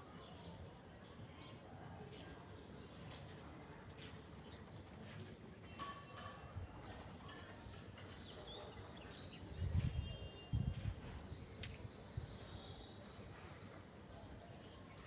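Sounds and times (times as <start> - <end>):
small birds chirping: 7.3 - 13.3.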